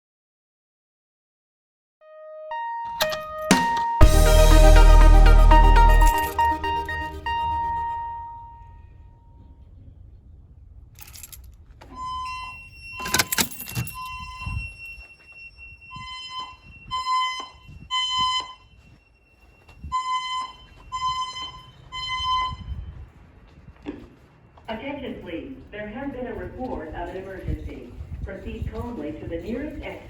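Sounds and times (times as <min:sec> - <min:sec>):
fire alarm beeping: 0:02.6 - 0:09.4, 0:11.9 - 0:23.0.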